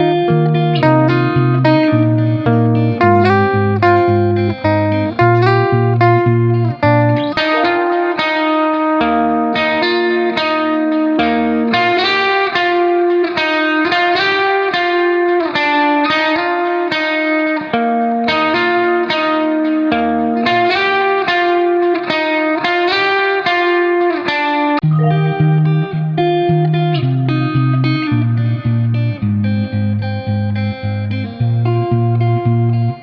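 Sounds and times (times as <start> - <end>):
plucked guitar melody: 0.0 - 33.0
bass line: 0.8 - 8.0, 24.8 - 26.3.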